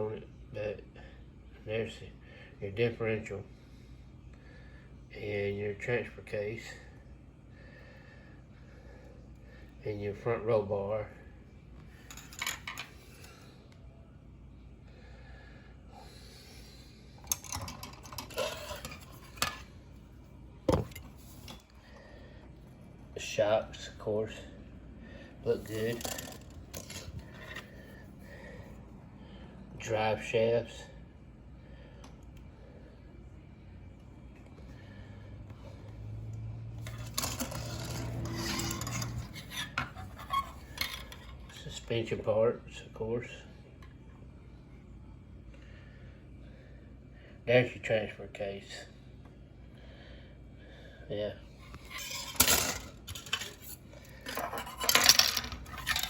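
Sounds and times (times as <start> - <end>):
plastic parts rustling: 17.3 - 19.7, 25.6 - 27.7, 36.8 - 41.5, 51.7 - 56.0.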